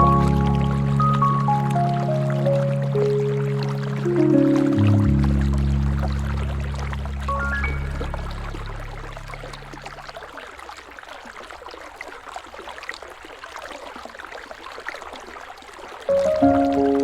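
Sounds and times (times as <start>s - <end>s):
sustained music notes: 0.0s - 10.1s, 16.1s - 17.0s
river water flowing: 0.0s - 17.0s.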